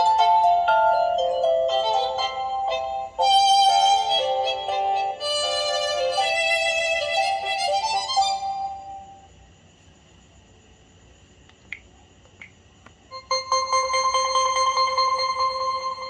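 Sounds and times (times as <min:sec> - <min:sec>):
phone ringtone melody: 0:00.0 - 0:09.2, 0:13.1 - 0:16.0
faint clicks: 0:11.4 - 0:13.0.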